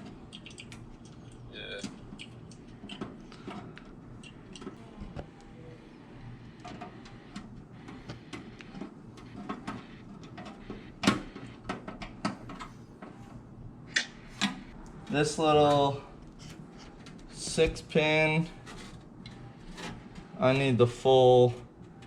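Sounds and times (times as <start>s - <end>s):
computer parts clicking and knocking: 0.0s - 5.3s.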